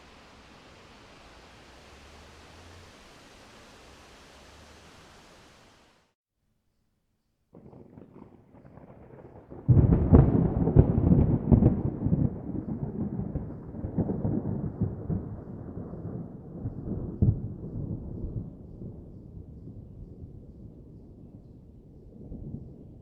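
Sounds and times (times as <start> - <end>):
thunder rumbling and cracking: 7.6 - 23.0.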